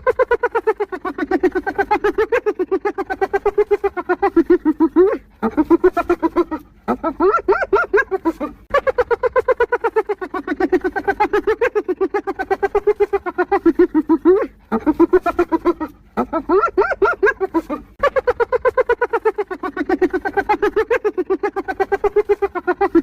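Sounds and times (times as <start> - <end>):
hyena laughing: 0.0 - 23.0.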